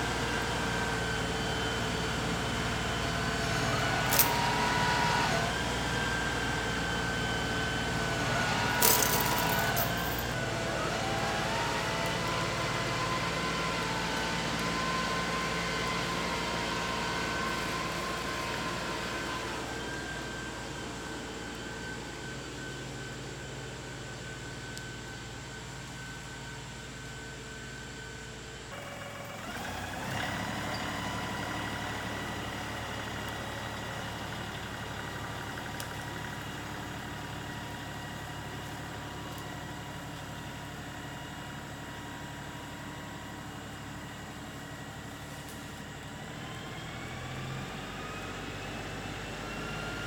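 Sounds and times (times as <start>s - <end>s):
tractor engine running: 0.0s - 50.0s.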